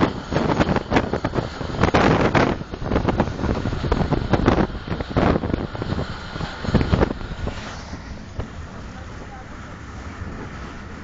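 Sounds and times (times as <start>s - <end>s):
train wheels rumbling on track: 0.0s - 11.0s
wind buffeting microphone: 0.0s - 11.0s.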